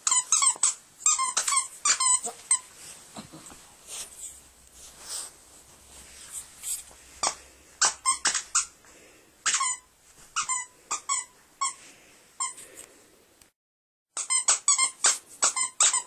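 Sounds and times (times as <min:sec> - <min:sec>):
squeaky dog toy squeaking: 0:00.0 - 0:02.7, 0:07.2 - 0:08.8, 0:09.4 - 0:11.8, 0:12.4 - 0:12.6, 0:14.2 - 0:16.0.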